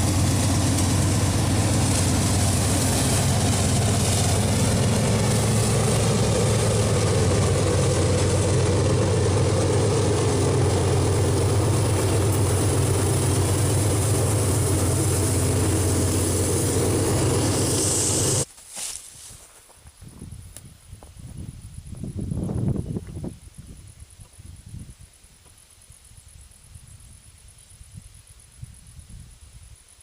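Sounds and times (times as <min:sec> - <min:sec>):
diesel locomotive engine drone: 0:00.0 - 0:18.5.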